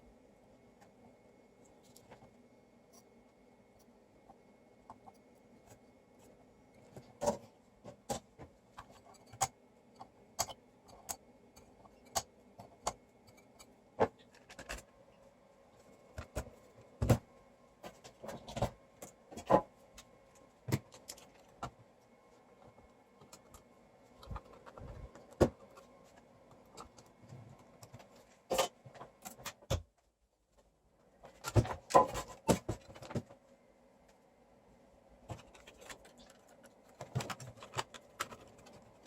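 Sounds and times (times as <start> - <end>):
faint steady hum: 0.0 - 39.0
tools clicking and tapping: 8.8 - 14.8.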